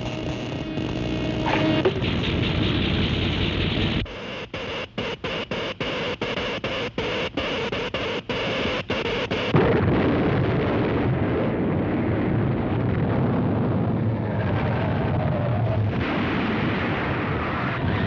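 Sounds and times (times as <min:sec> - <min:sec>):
cartoon earthquake rumble: 0:09.5 - 0:18.0.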